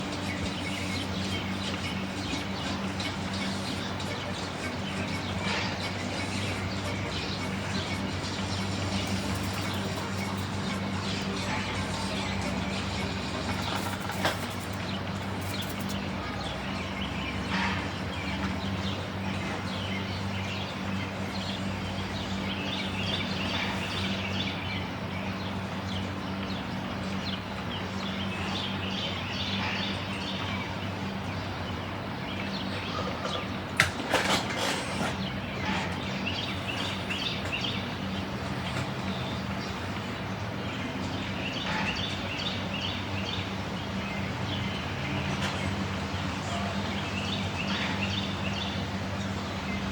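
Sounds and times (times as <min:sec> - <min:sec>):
steady low hum: 0:00.0 - 0:17.1
birds chirping: 0:00.0 - 0:49.9.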